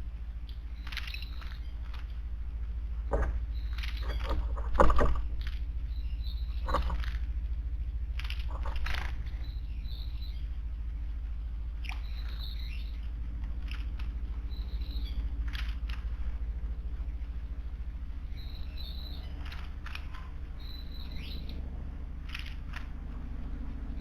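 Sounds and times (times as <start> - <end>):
steady low hum: 0.0 - 24.0
small birds chirping: 0.4 - 21.6.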